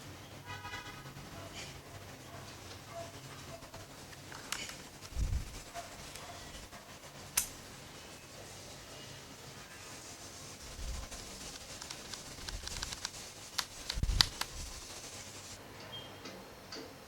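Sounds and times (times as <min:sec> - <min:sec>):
mechanical keyboard clicking: 0:11.6 - 0:14.6.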